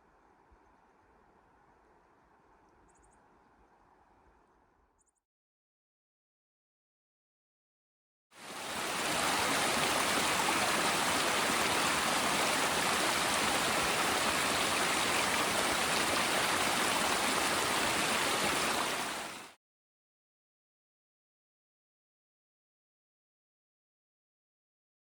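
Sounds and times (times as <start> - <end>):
stream water rushing: 8.4 - 19.6.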